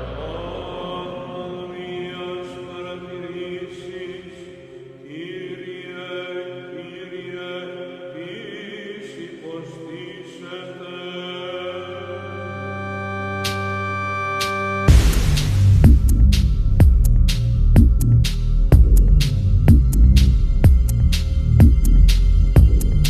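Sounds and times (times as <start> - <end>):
droning background music: 11.2 - 23.0.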